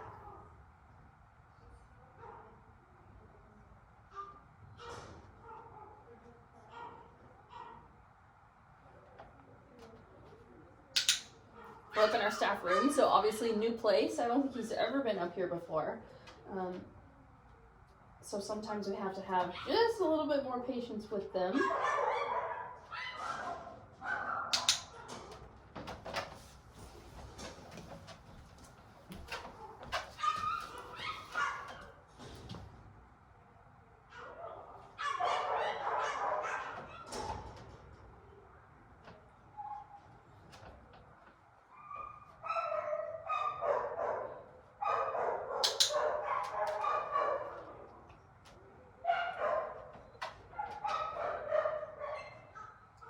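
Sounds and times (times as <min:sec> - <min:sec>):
sharp clicks and knocks: 0:11.0 - 0:11.3, 0:24.6 - 0:26.3
puppy whining: 0:30.2 - 0:31.7.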